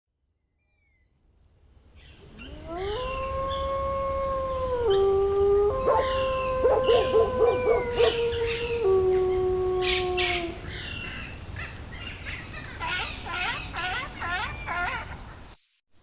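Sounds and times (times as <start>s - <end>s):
crickets chirping: 1.4s - 12.7s
canine howling: 2.3s - 11.1s.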